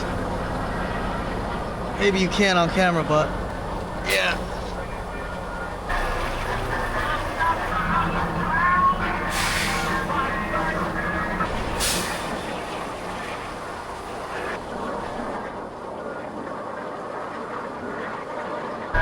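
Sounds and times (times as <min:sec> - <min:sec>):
low vehicle rumble: 0:00.0 - 0:16.0.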